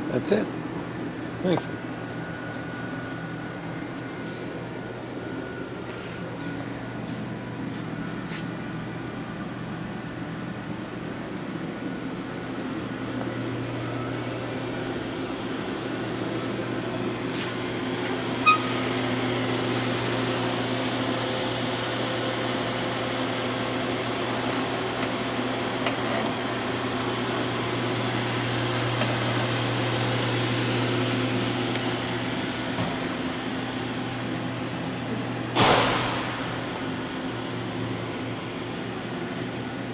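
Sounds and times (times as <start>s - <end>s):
machining center humming: 0.0s - 39.9s
short beep: 18.4s - 18.9s.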